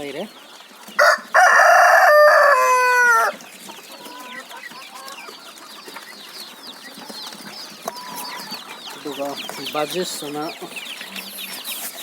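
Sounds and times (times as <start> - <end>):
chickens peeping and clucking: 0.0 - 12.0
rooster crowing: 1.0 - 3.4.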